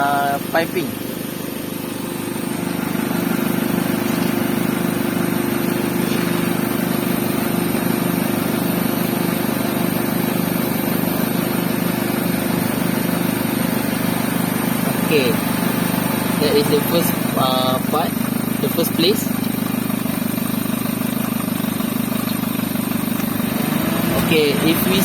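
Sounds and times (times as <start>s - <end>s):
car engine idling: 0.0s - 25.0s.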